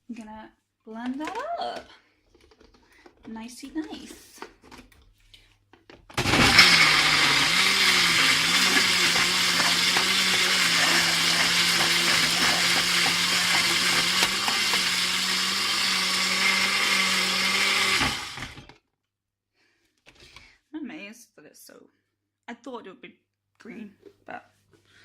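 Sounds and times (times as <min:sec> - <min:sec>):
blender motor running: 0:06.1 - 0:18.7.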